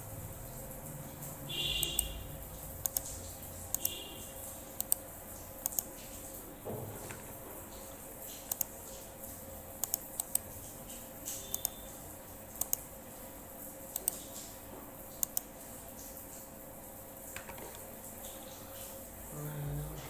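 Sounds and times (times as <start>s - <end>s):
faint steady hum: 0.0s - 20.0s
computer mouse and keyboard clicks: 2.8s - 4.0s, 4.8s - 5.0s, 5.6s - 5.9s, 8.5s - 8.7s, 9.8s - 10.4s, 11.5s - 11.8s, 12.6s - 12.8s, 13.9s - 14.3s, 15.2s - 15.5s, 17.4s - 17.9s.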